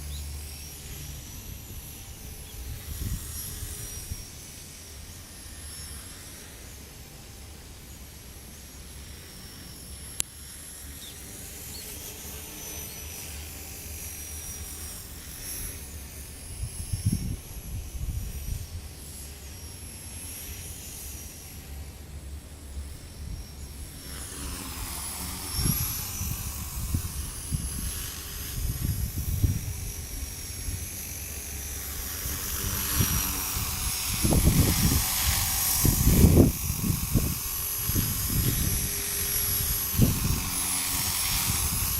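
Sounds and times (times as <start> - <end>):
rc helicopter motor whine: 0.0 - 41.9
wind rumbling on microphone: 0.8 - 4.4, 16.4 - 19.0, 24.8 - 41.9.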